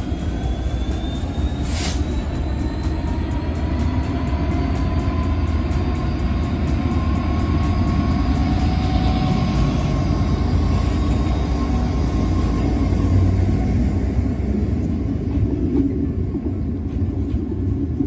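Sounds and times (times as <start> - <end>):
train rumbling: 0.0 - 18.0.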